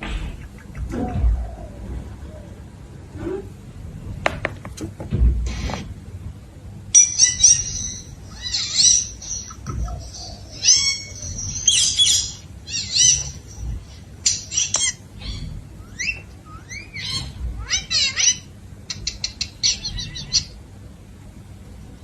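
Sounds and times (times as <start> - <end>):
parrot squawking and chattering: 7.0 - 20.6.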